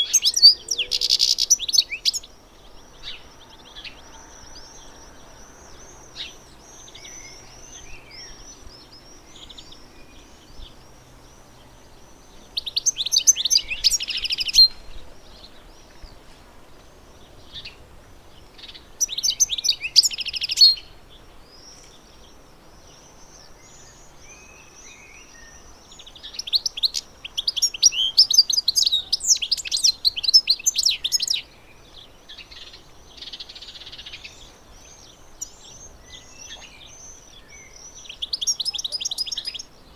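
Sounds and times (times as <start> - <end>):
finch twittering: 0.0 - 10.6, 11.8 - 16.1
soft bird chirping: 0.0 - 39.9.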